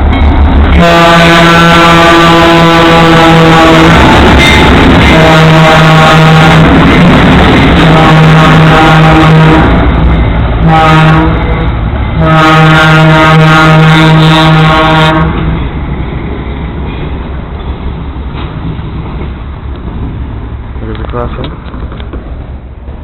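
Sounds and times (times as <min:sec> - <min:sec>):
locomotive air horn blasts: 0:00.7 - 0:06.8, 0:07.8 - 0:09.8, 0:10.6 - 0:15.4.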